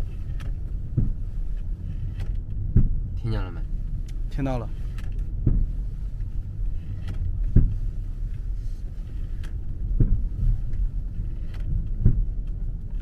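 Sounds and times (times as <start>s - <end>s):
dull clunks from car rear: 0.0s - 13.0s
road rumble inside car: 0.0s - 13.0s.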